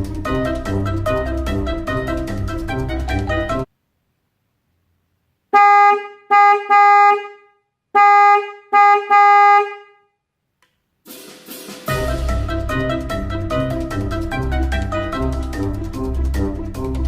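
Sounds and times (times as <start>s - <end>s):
car horn honks: 5.5s - 10.2s.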